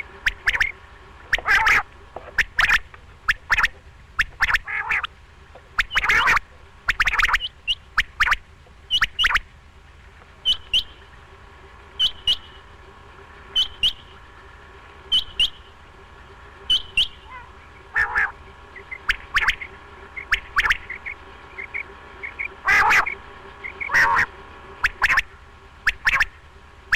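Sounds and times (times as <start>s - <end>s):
quail calling: 0.0s - 5.1s, 5.7s - 9.4s, 10.4s - 11.1s, 12.0s - 12.6s, 13.5s - 14.2s, 15.1s - 15.7s, 16.7s - 26.9s.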